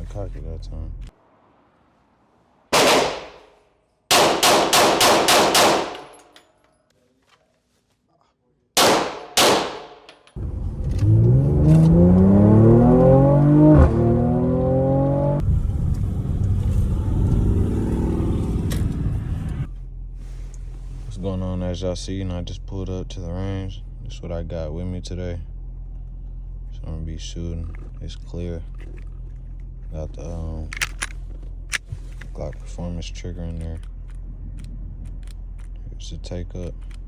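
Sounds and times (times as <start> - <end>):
engine-like hum: 0.0 - 6.7, 8.9 - 37.0
gunshots: 2.7 - 6.2, 8.8 - 10.1.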